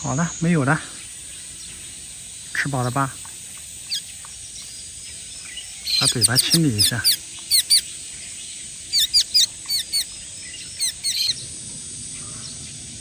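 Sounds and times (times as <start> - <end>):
young bird chirping: 3.6 - 11.4.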